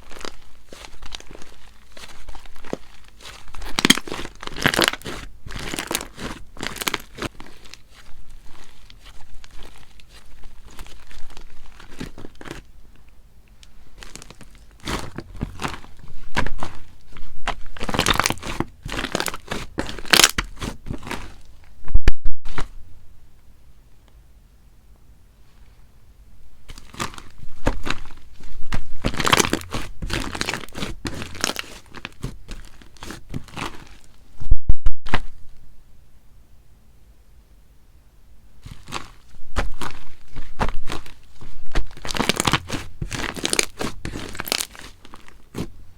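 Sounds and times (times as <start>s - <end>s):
slime crackling and popping: 0.0s - 12.7s, 13.6s - 21.7s, 26.7s - 34.2s, 38.6s - 45.8s.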